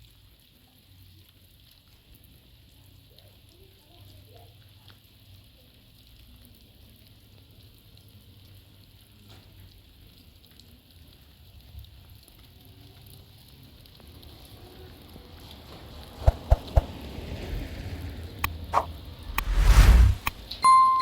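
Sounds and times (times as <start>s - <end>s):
light rain falling: 11.1s - 19.2s.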